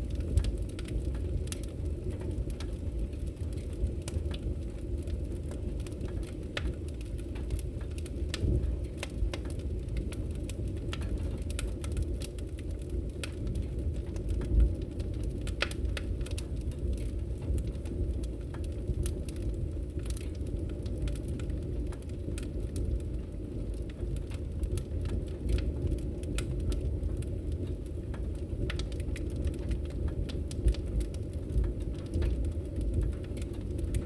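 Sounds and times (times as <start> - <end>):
campfire flames rushing: 0.0 - 34.0
wood crackling and popping: 0.0 - 34.0.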